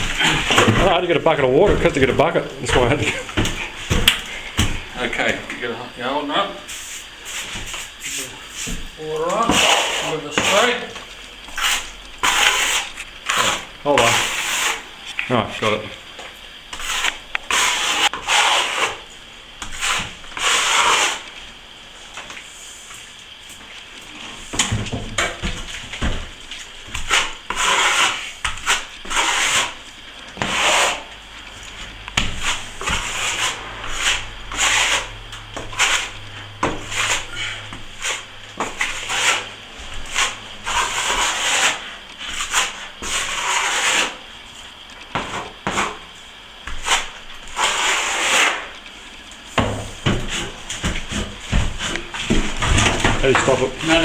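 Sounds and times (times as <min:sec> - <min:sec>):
trowel scraping wet plaster: 0:00.0 - 0:05.4, 0:06.7 - 0:15.9, 0:16.7 - 0:21.3, 0:26.8 - 0:31.2, 0:32.2 - 0:44.2, 0:46.6 - 0:48.8.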